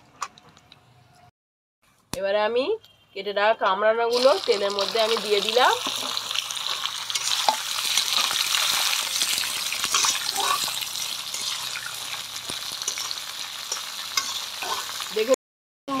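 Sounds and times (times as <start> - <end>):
fruit sizzling in hot oil: 4.1 - 15.4
spatula scraping a pan: 7.1 - 15.0.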